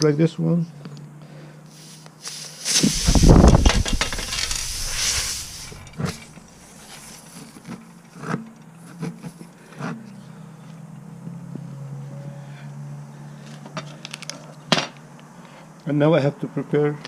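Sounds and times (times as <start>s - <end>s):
air hissing from tire puncture: 1.7s - 7.5s.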